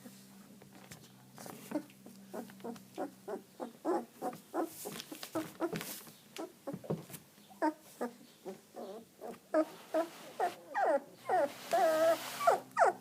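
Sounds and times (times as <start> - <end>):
puppy crying: 1.7 - 4.7, 7.6 - 13.0.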